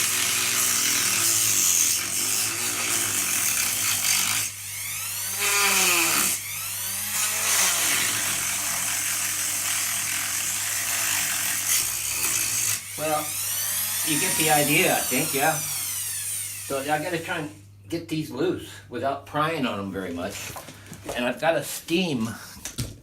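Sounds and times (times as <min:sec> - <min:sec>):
power tool grinding tiles: 0:00.0 - 0:17.4.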